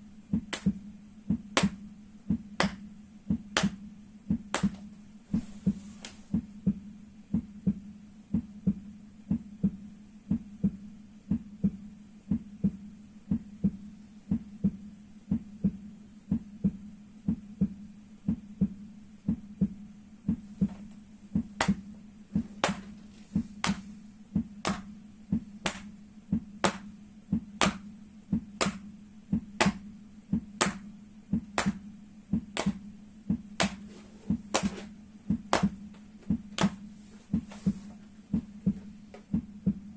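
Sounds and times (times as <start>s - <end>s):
steady low hum: 0.0s - 39.9s
slaps on soles of feet: 0.4s - 5.5s, 21.4s - 29.8s, 30.4s - 31.8s, 32.4s - 39.8s.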